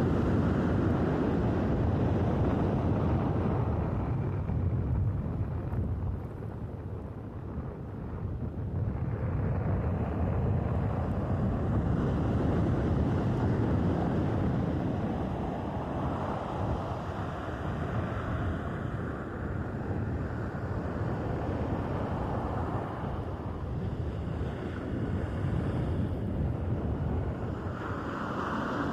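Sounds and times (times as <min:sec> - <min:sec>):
sea surf breaking: 0:27.6 - 0:28.9.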